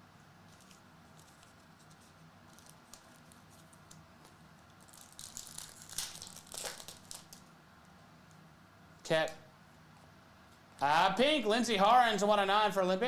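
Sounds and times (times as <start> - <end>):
foil wrapper crinkling: 0.5 - 7.5.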